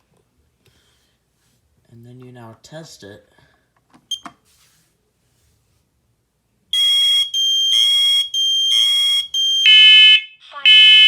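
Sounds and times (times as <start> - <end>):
smoke alarm shrill beeping: 6.8 - 11.0.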